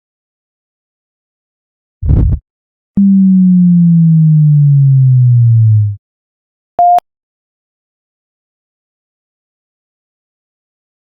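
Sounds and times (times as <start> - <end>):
descending pulsing electronic tone: 3.0 - 6.0
short high beep: 6.8 - 7.0.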